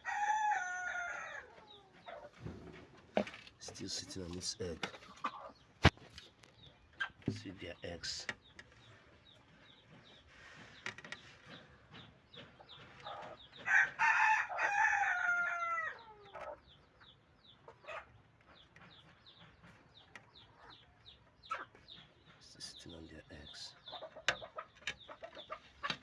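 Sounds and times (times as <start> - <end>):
rooster crowing: 0.0 - 1.6, 13.7 - 16.0.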